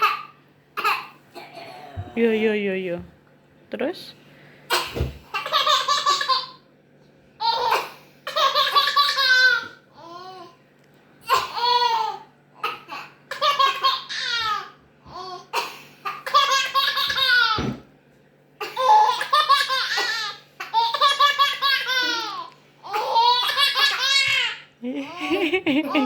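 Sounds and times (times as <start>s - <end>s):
child laughing: 18.7s - 26.0s.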